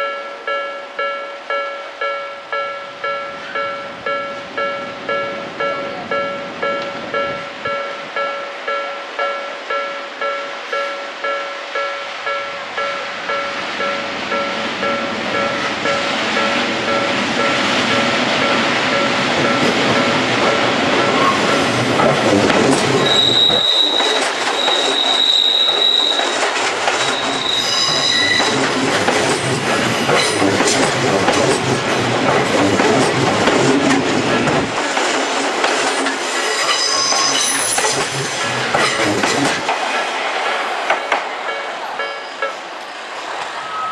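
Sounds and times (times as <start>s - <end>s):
level crossing warning bells: 0.0s - 34.8s, 41.4s - 42.9s, 43.6s - 43.9s
train wheels on rails: 0.3s - 43.9s
high wheel squeal: 21.1s - 30.4s, 36.0s - 39.5s, 43.6s - 43.9s.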